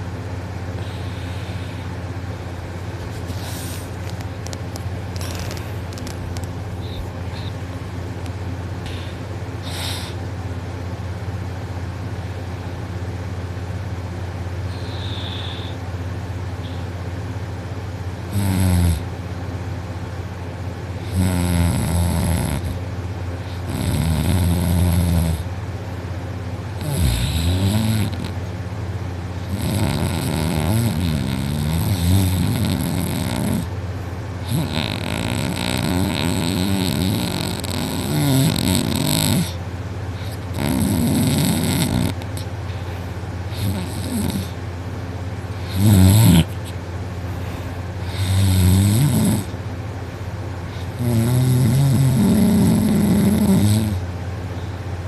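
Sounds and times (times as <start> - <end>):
person snoring heavily: 8.8 - 10.2, 14.7 - 15.8, 18.3 - 19.1, 21.0 - 22.8, 23.4 - 25.5, 26.8 - 28.4, 29.4 - 33.7, 34.4 - 39.6, 40.2 - 42.5, 43.5 - 44.6, 45.6 - 46.7, 47.4 - 49.6, 50.7 - 54.1.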